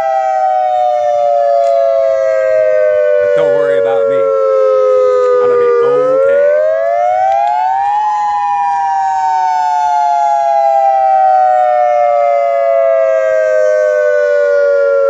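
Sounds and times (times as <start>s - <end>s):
warning siren wailing: 0.0s - 15.0s.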